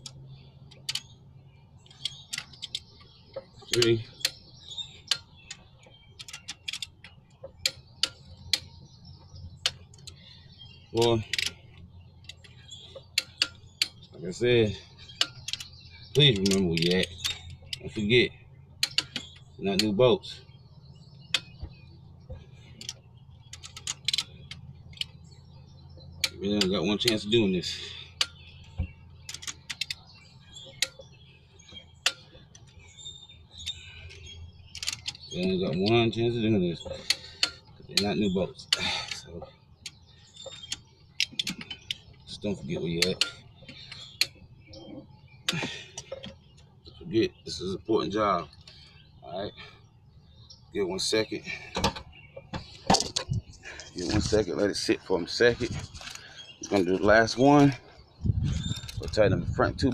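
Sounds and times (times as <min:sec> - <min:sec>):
ratchet wrench clicking: 0:34.7 - 0:35.2.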